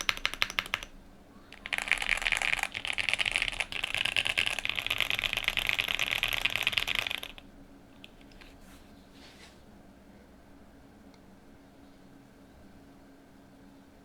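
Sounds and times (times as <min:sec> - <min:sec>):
fast mechanical keyboard typing: 0:00.0 - 0:01.0, 0:01.6 - 0:07.4.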